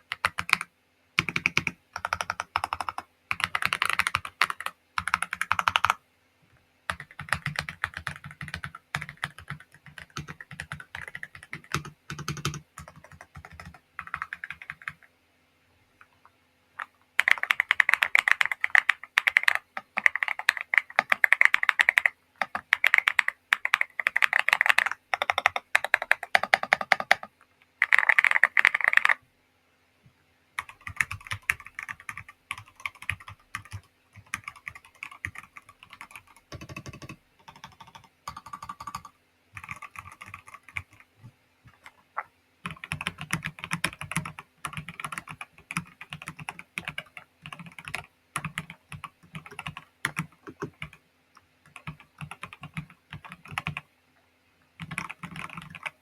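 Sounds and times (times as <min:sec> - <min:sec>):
mechanical keyboard typing: 0:00.0 - 0:06.0, 0:06.9 - 0:15.1, 0:16.8 - 0:29.2, 0:30.6 - 0:41.1, 0:42.6 - 0:51.0, 0:51.6 - 0:53.8, 0:54.8 - 0:56.0.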